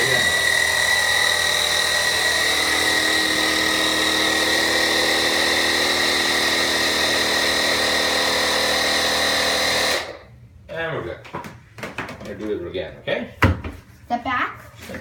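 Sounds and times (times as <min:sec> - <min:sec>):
air compressor motor whining: 0:00.0 - 0:10.3.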